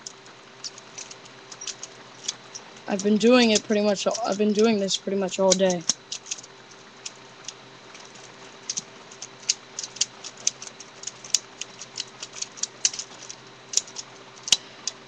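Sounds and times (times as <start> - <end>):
plastic pieces clicking: 5.5 - 15.0.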